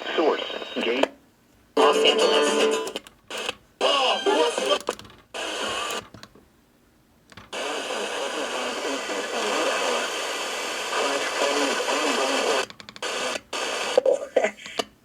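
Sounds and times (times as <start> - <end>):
radio hiss and static: 0.0 - 1.2, 1.8 - 6.0, 7.5 - 14.9.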